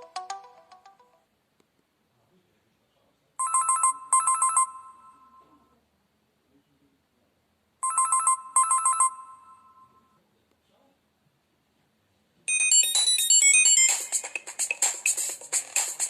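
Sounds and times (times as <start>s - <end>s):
mobile phone trill of high beeps: 3.4s - 5.5s, 7.8s - 10.0s, 12.5s - 14.2s
mobile phone melodic tone: 3.4s - 5.6s, 7.8s - 10.1s, 12.5s - 14.0s.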